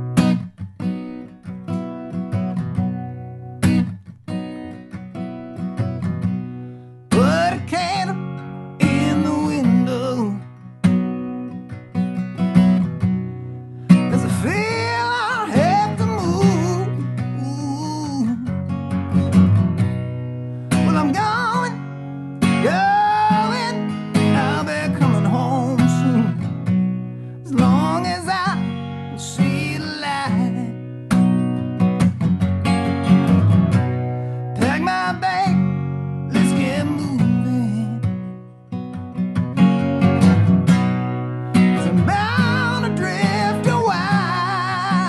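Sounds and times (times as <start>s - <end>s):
acoustic guitar strumming: 0.0s - 45.0s
person singing: 7.1s - 10.5s, 14.0s - 18.6s, 20.8s - 21.9s, 22.6s - 26.5s, 27.4s - 30.8s, 34.6s - 35.7s, 36.3s - 38.1s, 41.8s - 45.0s.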